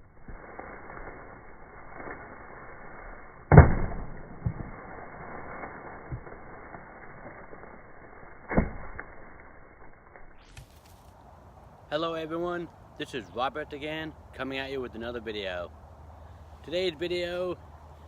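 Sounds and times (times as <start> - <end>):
faint steady background noise: 10.4 - 18.0.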